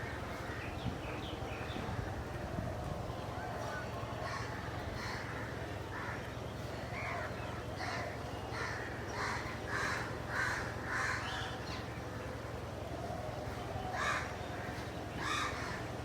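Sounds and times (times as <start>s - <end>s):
crow cawing: 4.2s - 6.2s, 7.0s - 11.6s, 13.9s - 15.9s.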